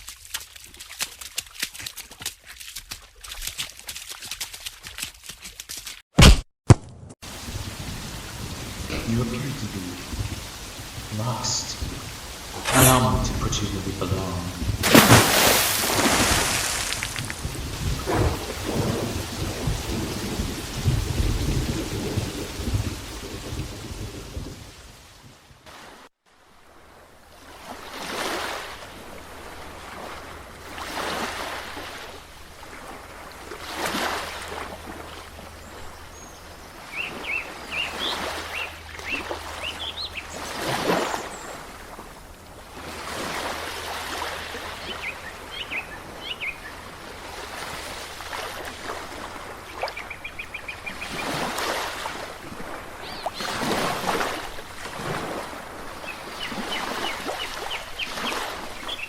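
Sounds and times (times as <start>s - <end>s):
waves washing in: 7.2s - 25.0s, 25.6s - 59.0s
birds chirping: 7.3s - 19.0s, 35.5s - 41.8s, 44.4s - 47.1s, 49.4s - 51.6s, 53.0s - 53.8s, 56.0s - 59.0s.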